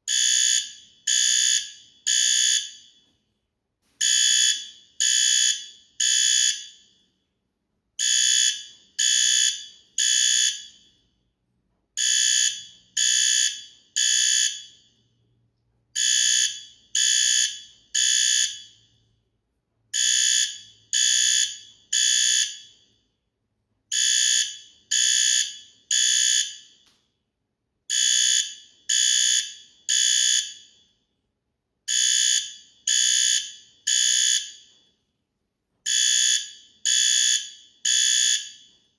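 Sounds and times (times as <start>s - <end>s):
fire alarm beeps: 0.0s - 3.4s, 4.0s - 7.2s, 8.0s - 11.2s, 12.0s - 15.3s, 15.9s - 19.2s, 19.9s - 23.2s, 23.9s - 27.1s, 27.9s - 31.3s, 31.9s - 35.1s, 35.8s - 38.9s.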